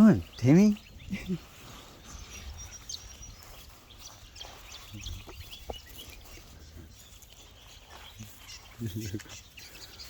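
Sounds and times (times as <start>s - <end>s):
bird chirps: 0.0s - 10.0s
wind rumble on microphone: 0.8s - 7.8s
small scuffs and clicks: 1.4s - 9.8s.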